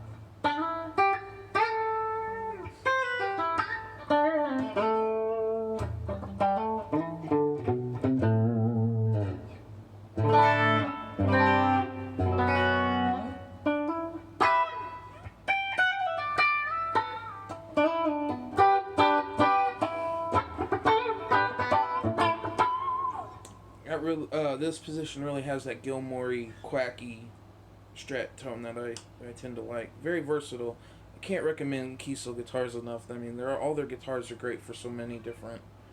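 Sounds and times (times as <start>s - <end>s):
clean electric guitar playing: 0.0s - 23.7s.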